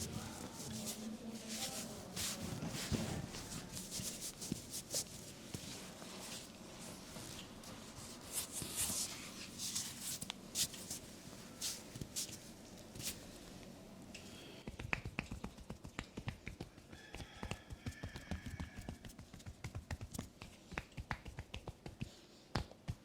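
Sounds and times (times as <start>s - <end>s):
hands rubbing over skin: 0.0s - 13.2s, 14.7s - 17.2s, 18.1s - 22.2s
sharp hand taps and slaps: 14.6s - 23.0s.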